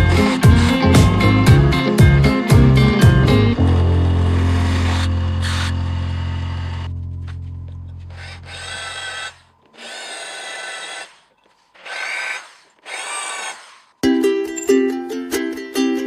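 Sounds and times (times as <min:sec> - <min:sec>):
ukulele music: 0:00.0 - 0:05.6, 0:14.0 - 0:16.0
motor low hum: 0:00.0 - 0:09.8
electric drill boring into metal: 0:03.6 - 0:06.9, 0:08.1 - 0:14.0
drill bit squealing: 0:04.4 - 0:06.9, 0:08.1 - 0:14.0.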